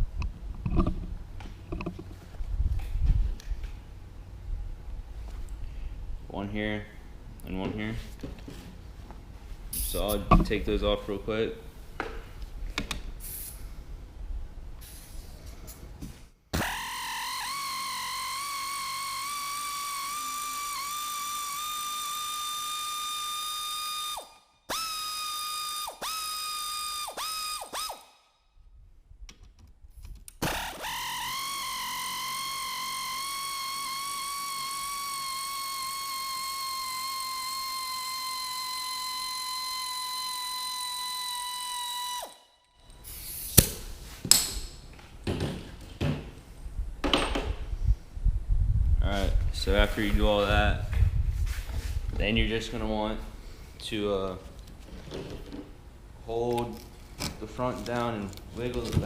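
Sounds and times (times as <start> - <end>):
metal clunks and knocks: 0.6 - 2.2, 10.2 - 10.7, 44.3 - 46.4, 47.0 - 47.6
power tool motor whining: 16.6 - 28.2, 30.4 - 43.6.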